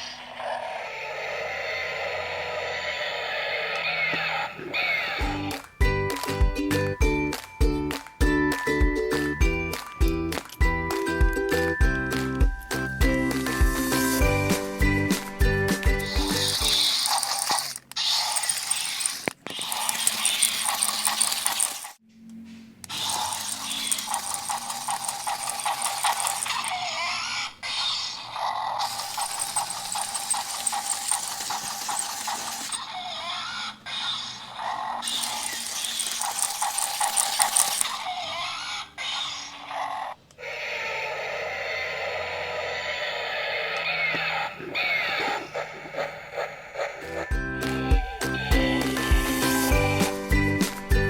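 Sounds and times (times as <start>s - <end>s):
toy walking mechanism clicking: 15.9s - 22.0s, 22.8s - 33.4s, 34.0s - 39.3s.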